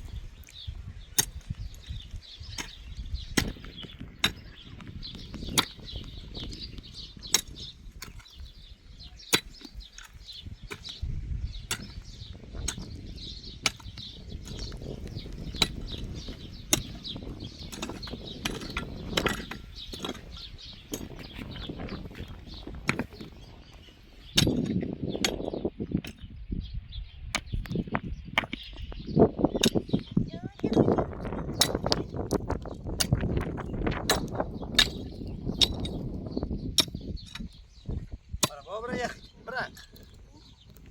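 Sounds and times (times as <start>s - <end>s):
sharp tool strikes: 1.2s - 1.6s, 2.5s - 4.4s, 7.2s - 8.4s, 9.3s - 11.0s, 11.7s - 13.0s, 15.5s - 21.2s, 36.8s - 37.6s.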